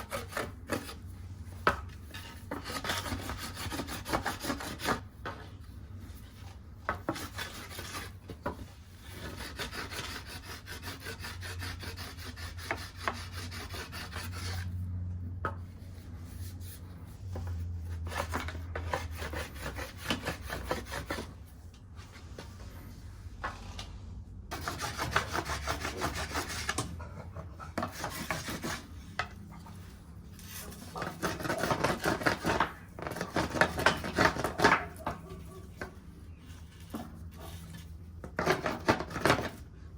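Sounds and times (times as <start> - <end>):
bark scratching on antler: 2.0 - 5.0, 9.0 - 14.7, 15.8 - 21.4, 24.5 - 39.5.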